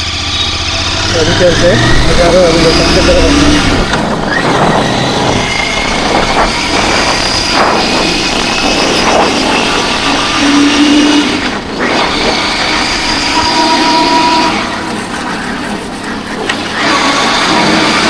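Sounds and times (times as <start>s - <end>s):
motorcycle engine and exhaust: 0.0s - 18.0s
wind and road noise: 0.0s - 18.0s.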